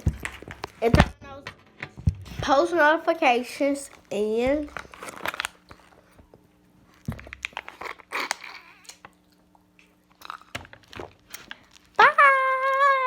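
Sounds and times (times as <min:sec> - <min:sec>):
chewing and crunching food: 0:03.9 - 0:13.0
wet mouth clicks: 0:07.7 - 0:09.1.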